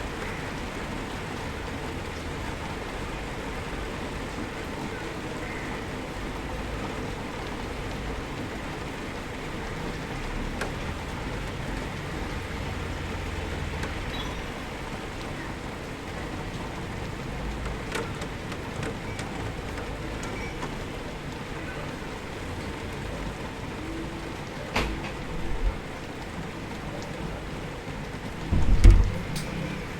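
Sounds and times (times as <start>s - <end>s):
raindrops ticking on a surface: 0.0s - 29.9s
steady rainfall hiss: 0.0s - 29.9s
low rumble: 28.5s - 29.9s.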